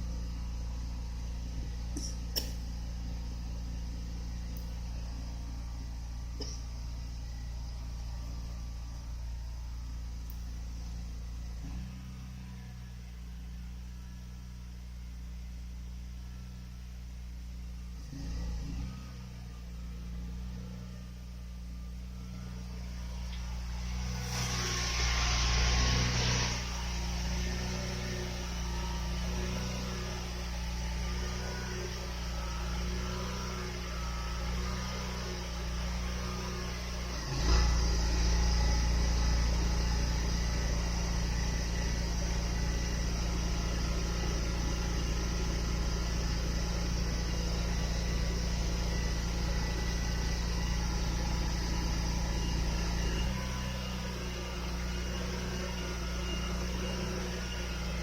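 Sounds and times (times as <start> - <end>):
low mechanical hum: 0.0 - 58.0.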